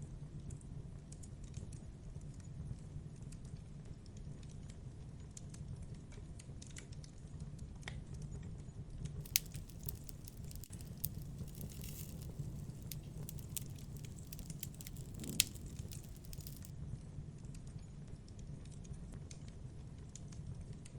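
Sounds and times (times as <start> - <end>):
campfire crackling and popping: 9.2 - 16.7.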